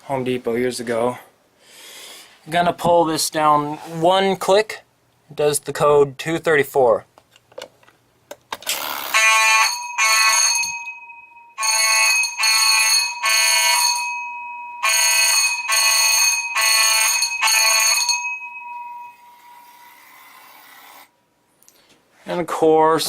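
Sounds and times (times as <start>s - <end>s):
fire alarm ringing pulses: 9.0s - 19.9s.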